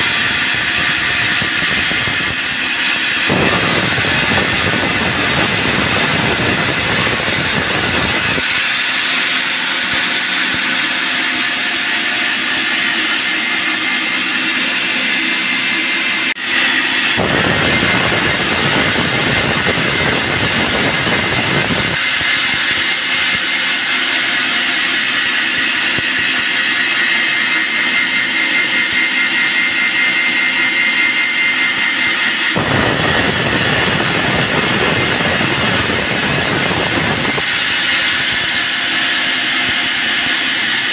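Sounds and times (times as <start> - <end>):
bandsaw sawmill running: 0.0 - 40.9
deep rumble: 32.6 - 37.5.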